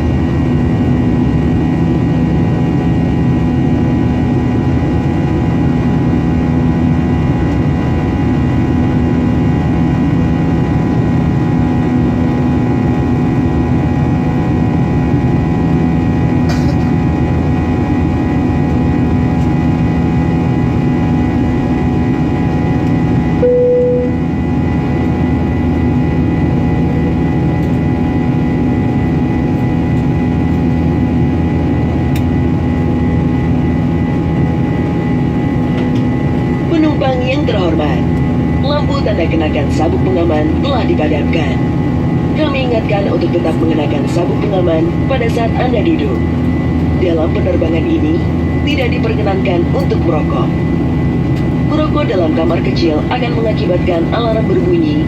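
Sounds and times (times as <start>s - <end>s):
constant hum: 0.0s - 55.0s
jet airliner cabin roar: 0.0s - 55.0s
single tone: 23.4s - 24.4s.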